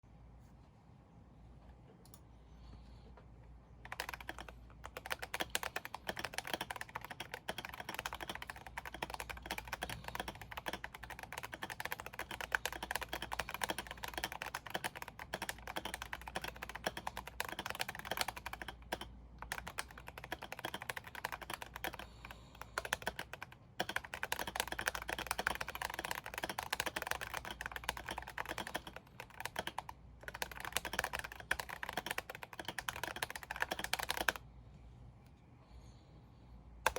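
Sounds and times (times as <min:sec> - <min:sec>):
mechanical keyboard key clacks: 0:03.8 - 0:22.0.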